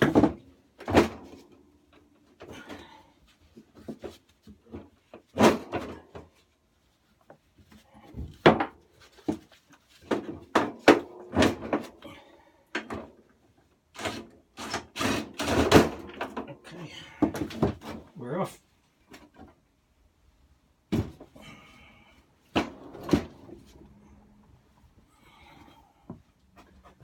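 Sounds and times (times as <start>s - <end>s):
lawnmower parts clunking: 22.5s - 24.0s.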